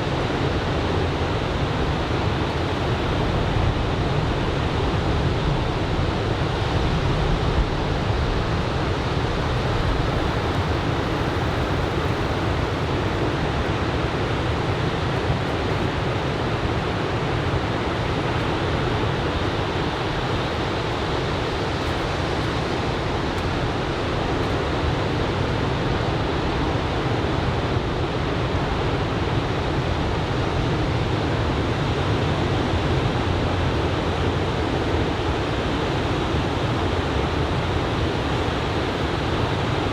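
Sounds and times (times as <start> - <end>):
ocean waves breaking: 6.8 - 25.4.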